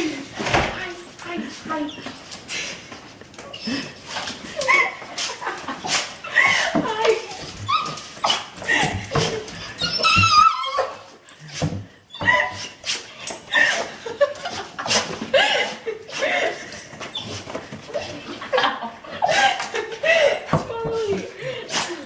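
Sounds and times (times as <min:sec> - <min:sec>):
dog whining and yipping: 0:07.4 - 0:08.5, 0:09.6 - 0:11.2.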